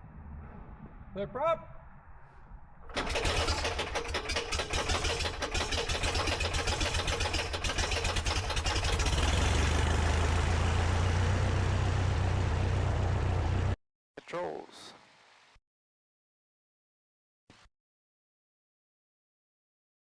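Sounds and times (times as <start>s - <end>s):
aircraft engine starting: 2.8s - 13.8s.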